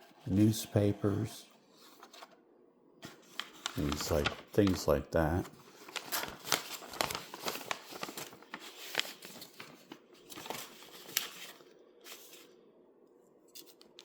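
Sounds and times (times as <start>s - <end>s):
packaging crinkling and rustling: 3.0s - 12.6s.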